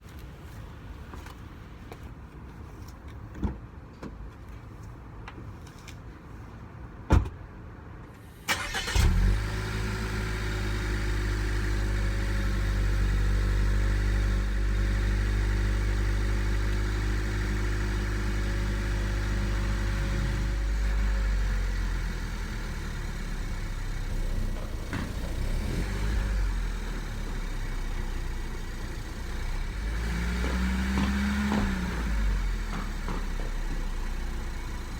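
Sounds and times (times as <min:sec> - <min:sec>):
car engine starting and idling: 0:08.3 - 0:34.9.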